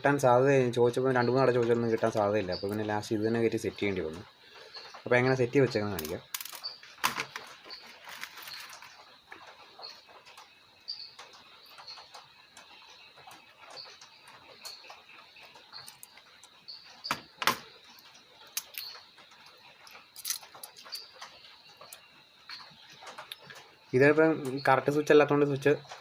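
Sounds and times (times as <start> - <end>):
small tools clicking and tapping: 5.6 - 10.5, 11.1 - 23.8.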